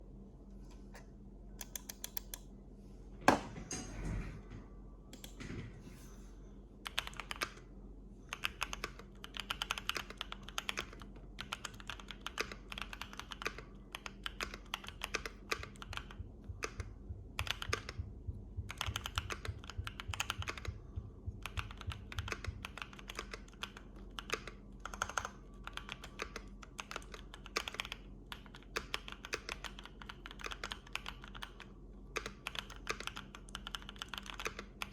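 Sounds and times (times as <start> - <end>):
keyboard thump: 3.3 - 3.6
mechanical keyboard typing: 6.8 - 7.6, 8.3 - 18.0, 18.7 - 20.8, 21.4 - 34.9.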